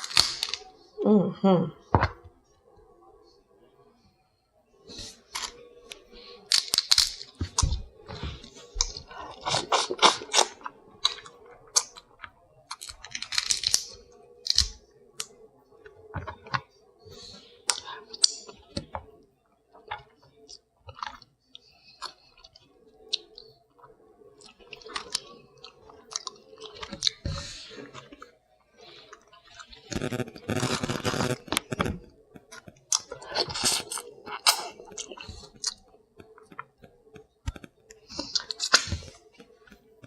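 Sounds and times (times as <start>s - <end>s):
crab shells cracking: 0.0s - 0.7s, 6.4s - 7.7s, 8.7s - 15.4s
faint steady hum: 0.0s - 40.0s
chewing: 4.9s - 40.0s.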